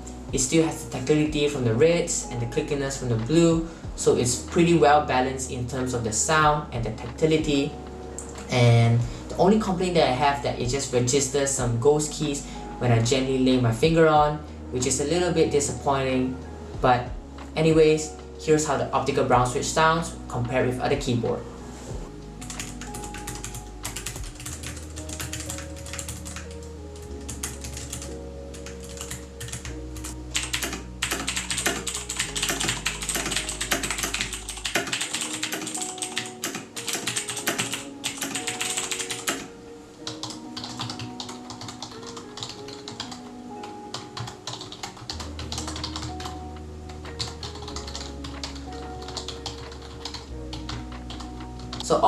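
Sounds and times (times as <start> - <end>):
background music with bass: 0.0 - 36.0, 45.1 - 52.0
keyboard typing clacks: 22.4 - 39.5, 40.1 - 43.2, 43.9 - 46.3, 47.1 - 51.9.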